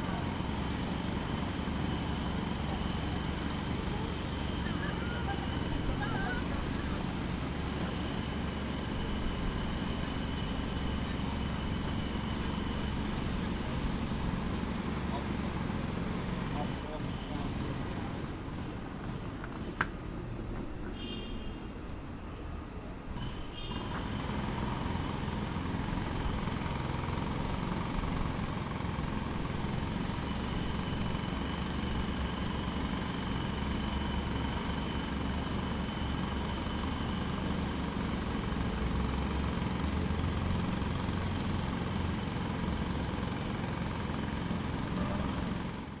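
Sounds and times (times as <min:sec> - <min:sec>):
jackhammer hammering: 0:00.0 - 0:19.9, 0:23.1 - 0:46.0.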